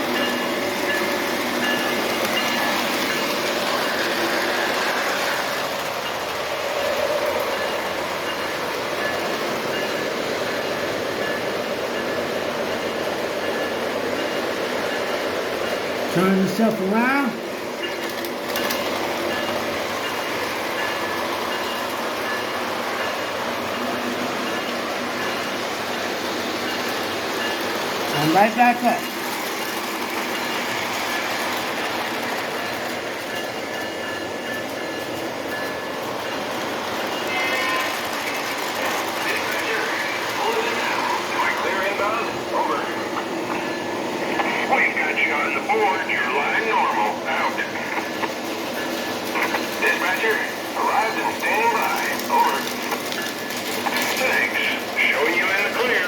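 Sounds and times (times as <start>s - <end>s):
model train running on track: 0.0s - 56.0s
wheels rolling over rails: 46.6s - 56.0s.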